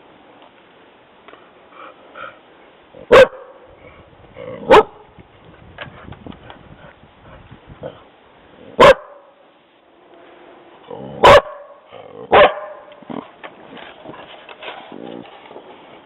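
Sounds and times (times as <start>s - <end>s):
dog barking: 3.1s - 3.7s, 4.7s - 5.0s, 8.8s - 9.3s, 11.2s - 12.9s.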